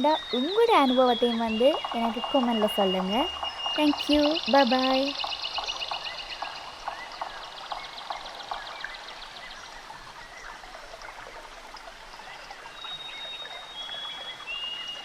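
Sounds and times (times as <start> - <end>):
long high whistles: 0.0 - 5.9
small birds chirping: 0.0 - 10.8
running water: 0.0 - 15.0.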